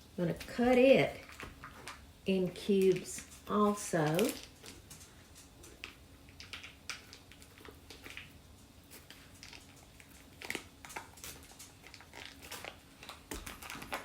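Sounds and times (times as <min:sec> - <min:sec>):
cream cheese squishing: 0:00.0 - 0:14.0.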